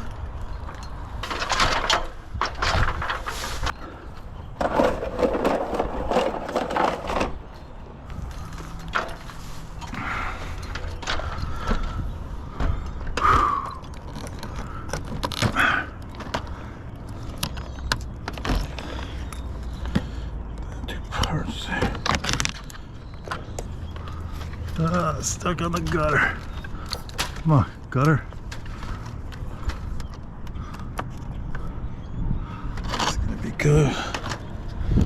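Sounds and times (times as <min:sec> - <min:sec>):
scraping and knocking of equipment: 0:00.7 - 0:03.8, 0:04.5 - 0:12.0.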